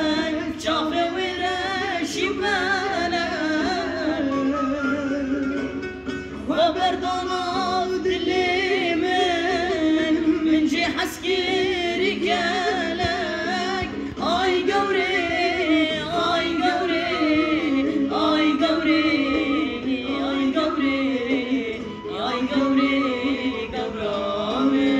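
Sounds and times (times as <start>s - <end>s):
instrumental backing: 0.0s - 24.9s
person singing: 6.4s - 24.9s.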